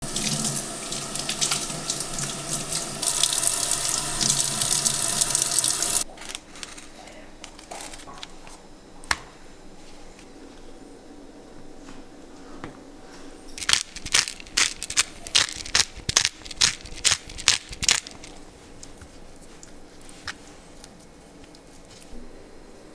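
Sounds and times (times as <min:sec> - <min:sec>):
water running from tap: 0:00.0 - 0:06.0.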